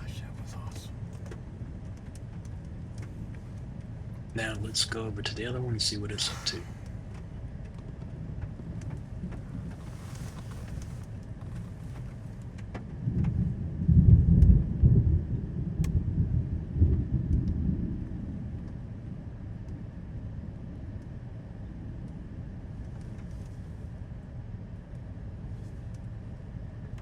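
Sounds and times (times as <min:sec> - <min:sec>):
thunder rumbling: 0:00.0 - 0:22.9
steady low background: 0:00.0 - 0:27.0
light ticks: 0:00.1 - 0:13.4.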